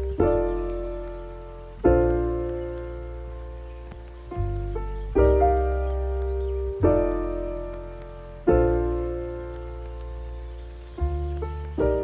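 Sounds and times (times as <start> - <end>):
deep bass: 0.0 - 12.0
soft keyboard chords: 0.0 - 12.0.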